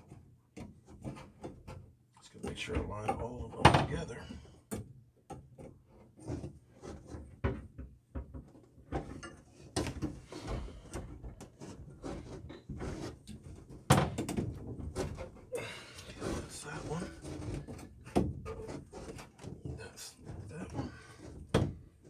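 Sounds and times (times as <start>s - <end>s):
plastic pipe fittings knocking: 4.7s - 15.6s.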